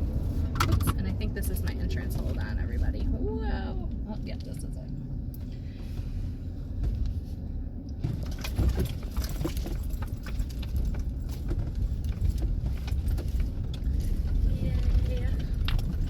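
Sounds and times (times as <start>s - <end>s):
van engine and road rumble: 0.0s - 16.0s.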